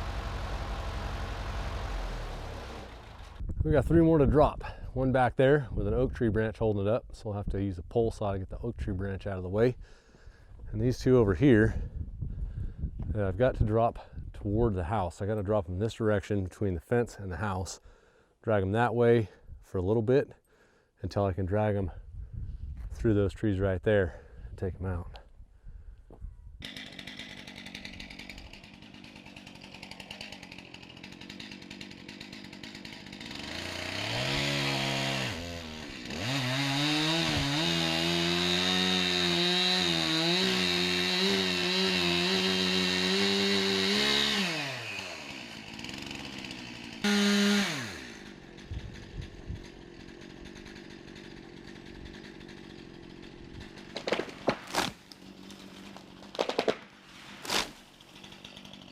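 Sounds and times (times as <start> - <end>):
chainsaw idling and revving: 0.0 - 3.4, 26.6 - 58.9.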